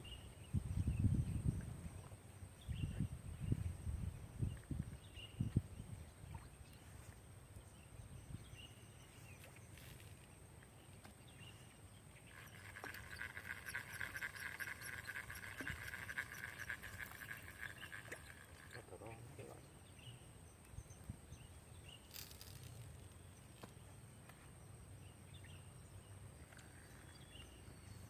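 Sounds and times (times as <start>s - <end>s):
faint chirps: 11.4s - 23.5s.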